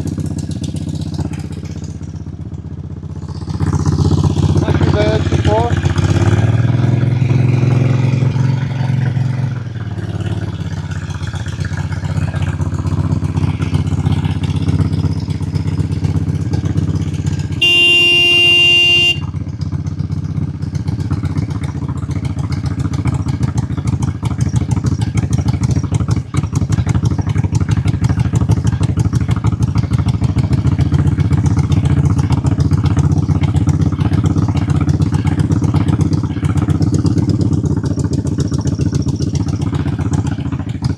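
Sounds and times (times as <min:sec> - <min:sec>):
motorcycle engine idling: 0:00.0 - 0:40.9
horn-like beep: 0:17.6 - 0:19.3.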